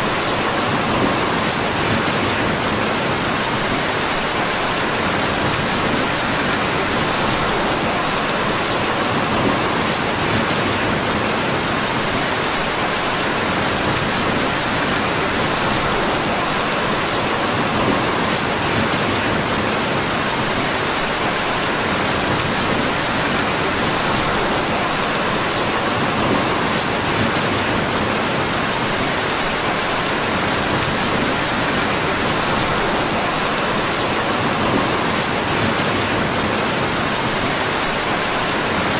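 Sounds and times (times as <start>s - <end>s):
steady rain hiss: 0.0s - 38.9s.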